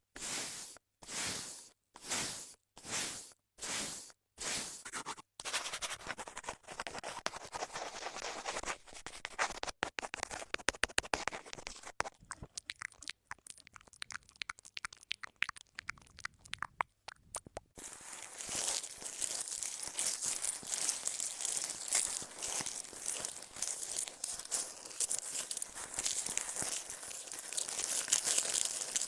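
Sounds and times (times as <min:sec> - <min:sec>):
quick taps and clicks: 0:09.2 - 0:12.8
scratching rustle: 0:17.8 - 0:29.0.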